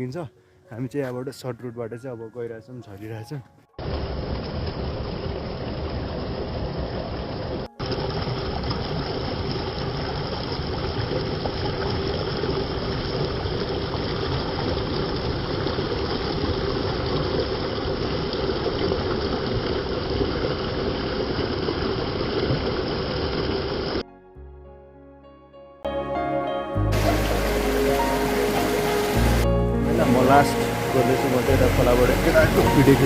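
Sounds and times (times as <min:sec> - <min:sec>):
stream water rushing: 0:03.8 - 0:24.0, 0:26.8 - 0:33.0.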